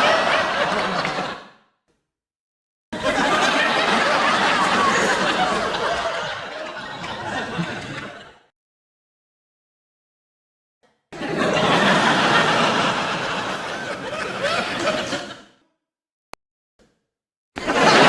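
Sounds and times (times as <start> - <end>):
crowd laughing: 0.0 - 1.5, 3.0 - 8.4, 11.2 - 15.5, 17.6 - 18.0.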